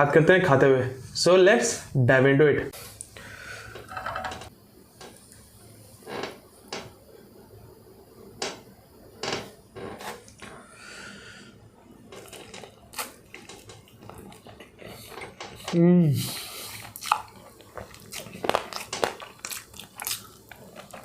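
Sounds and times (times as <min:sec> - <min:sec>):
dishes clinking and knocking: 0:03.8 - 0:04.5.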